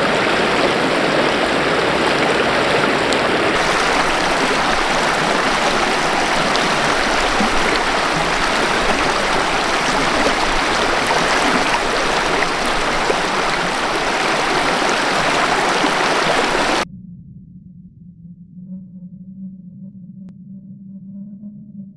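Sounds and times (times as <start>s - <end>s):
river water rushing over rocks: 0.0s - 16.8s.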